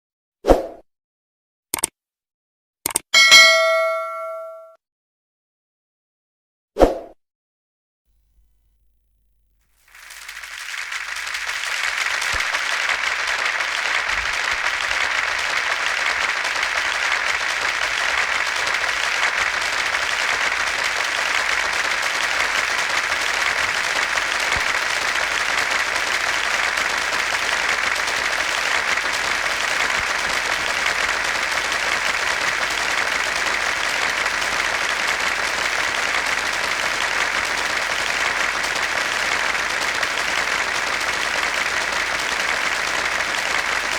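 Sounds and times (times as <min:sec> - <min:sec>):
crowd applauding: 0:09.7 - 0:43.9.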